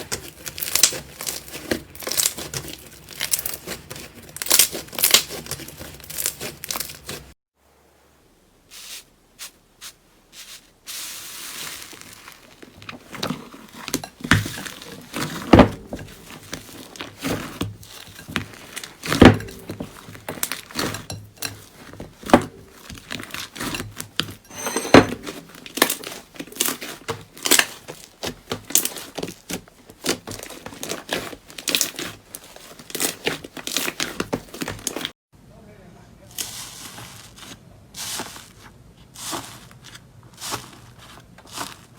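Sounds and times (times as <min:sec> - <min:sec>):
slime crinkling and popping: 0:00.0 - 0:07.3, 0:11.4 - 0:15.4, 0:25.6 - 0:35.1.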